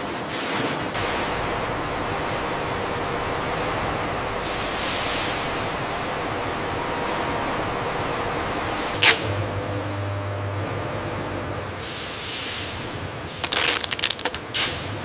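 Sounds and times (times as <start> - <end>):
industrial machinery running: 0.9 - 14.2
hissing burst: 1.0 - 9.4.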